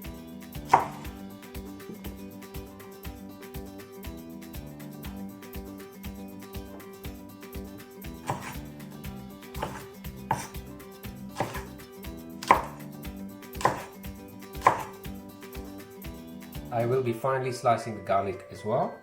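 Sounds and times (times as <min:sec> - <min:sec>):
background music: 0:00.0 - 0:19.0
knife slicing vegetables on board: 0:00.6 - 0:01.2, 0:08.1 - 0:11.8, 0:12.4 - 0:12.9, 0:13.5 - 0:15.1.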